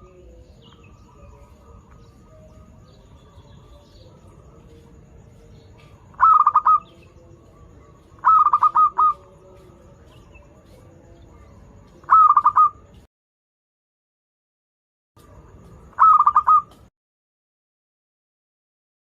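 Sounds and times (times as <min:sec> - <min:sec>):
dove chattering coos: 0:06.1 - 0:07.2, 0:08.1 - 0:09.4, 0:12.0 - 0:12.9, 0:16.0 - 0:16.7.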